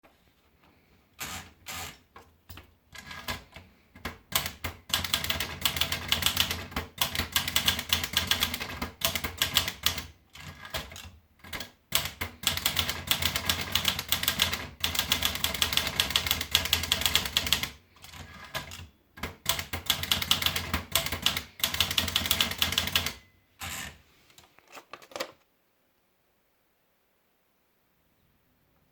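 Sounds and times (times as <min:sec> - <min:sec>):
manual typewriter typing: 0:01.2 - 0:24.0.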